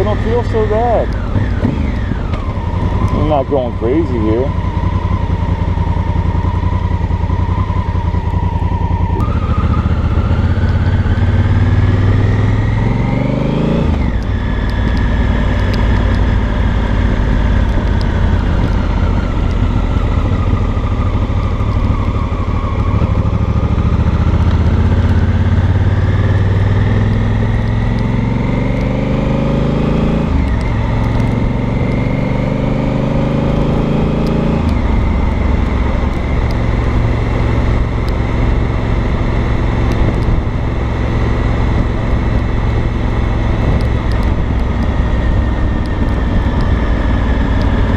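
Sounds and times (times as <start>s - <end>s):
motorcycle engine accelerating: 0.0s - 47.9s
road and wind noise: 0.0s - 47.9s.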